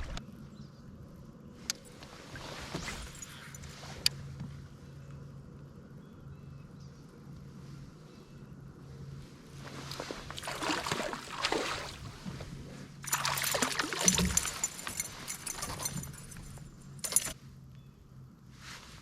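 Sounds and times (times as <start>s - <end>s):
water splashing and trickling: 9.8s - 17.4s
sharp splash: 10.4s - 12.2s, 13.0s - 16.0s.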